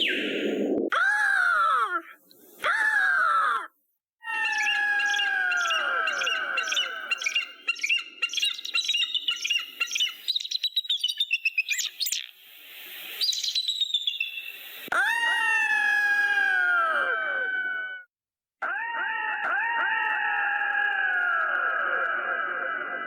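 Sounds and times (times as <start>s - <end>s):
high chattering bird notes: 0.0s - 0.9s, 4.4s - 14.8s
bird of prey calling: 4.3s - 12.2s.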